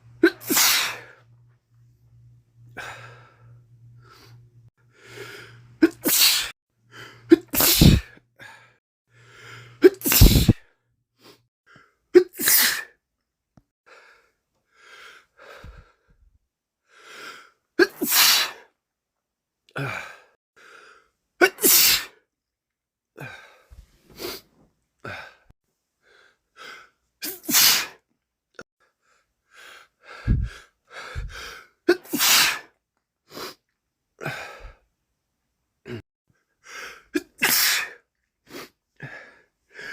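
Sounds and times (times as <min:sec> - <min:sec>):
man sneezing: 0:00.2 - 0:01.0, 0:05.8 - 0:06.5, 0:07.3 - 0:08.2, 0:09.8 - 0:10.6, 0:12.2 - 0:12.9, 0:17.8 - 0:18.6, 0:21.4 - 0:22.2, 0:27.2 - 0:28.0, 0:31.9 - 0:32.7, 0:37.2 - 0:38.0.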